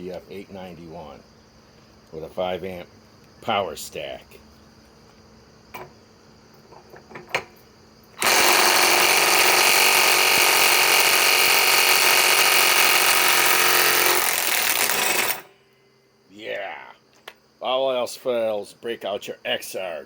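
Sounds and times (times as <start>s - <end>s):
impact wrench hammering on nut: 8.2s - 15.5s.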